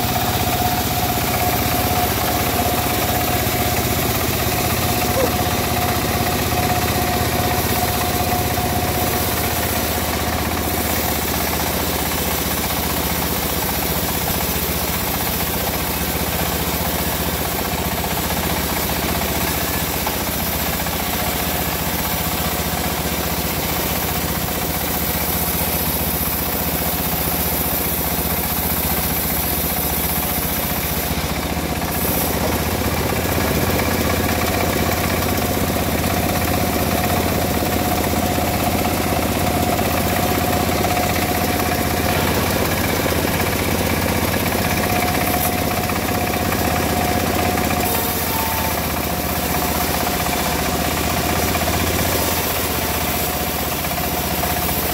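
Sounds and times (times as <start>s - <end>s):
thin steady whine: 0.0s - 16.4s
machine engine running steadily: 0.0s - 54.9s.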